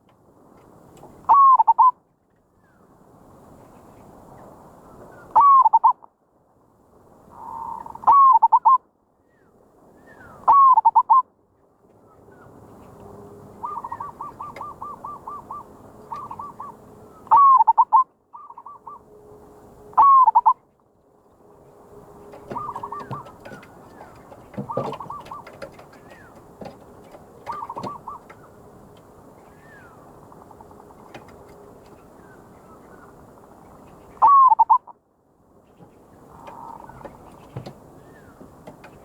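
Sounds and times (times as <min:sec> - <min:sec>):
dove cooing: 0:13.6 - 0:19.1, 0:20.0 - 0:20.6, 0:22.2 - 0:28.6, 0:34.2 - 0:34.9, 0:36.3 - 0:39.0.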